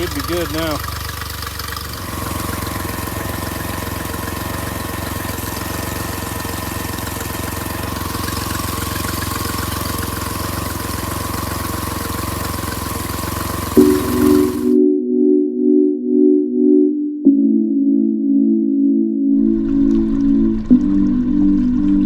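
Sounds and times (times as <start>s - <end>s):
outboard motor running: 0.0s - 14.8s.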